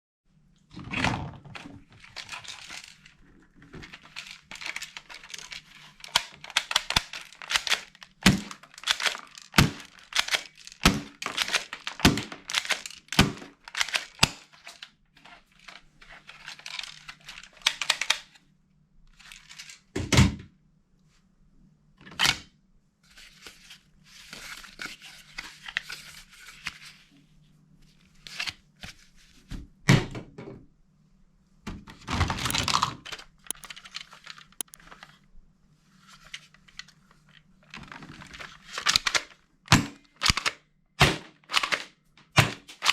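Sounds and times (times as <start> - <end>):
tape or cardboard tearing: 33.5 - 33.7
plastic packaging crinkling: 33.5 - 33.9.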